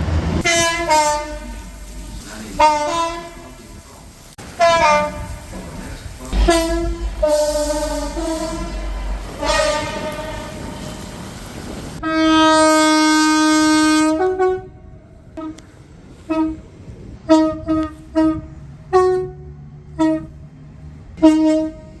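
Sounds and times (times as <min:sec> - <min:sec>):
two-tone train horn: 0:00.4 - 0:03.8, 0:04.4 - 0:05.6, 0:06.3 - 0:22.0.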